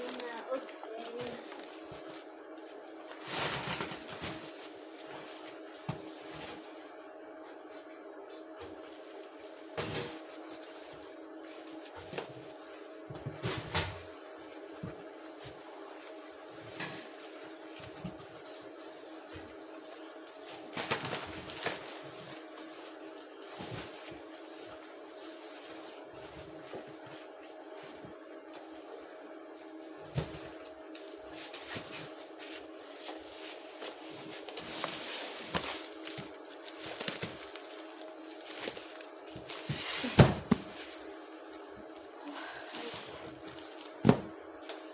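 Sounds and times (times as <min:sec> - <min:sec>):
electrical hum: 0:00.0 - 0:44.9
items knocking and rustling: 0:08.6 - 0:28.7, 0:29.8 - 0:44.9.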